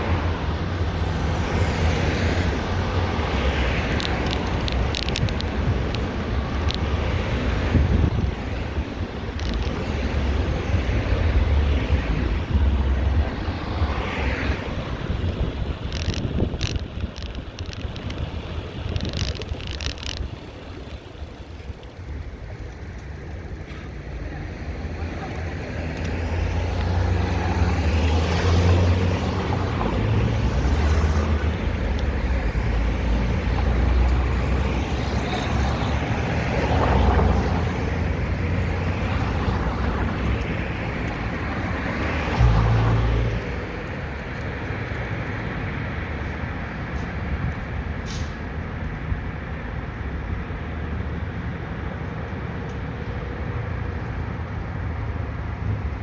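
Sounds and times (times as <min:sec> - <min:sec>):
passing cars rumbling: 0:00.0 - 0:56.0
short clicks and rattles: 0:15.6 - 0:23.2.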